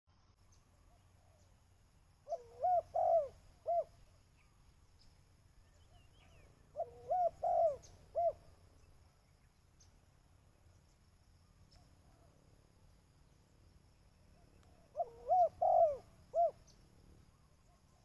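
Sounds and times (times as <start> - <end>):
dove cooing: 2.2 - 4.0, 6.6 - 8.5, 14.4 - 16.8.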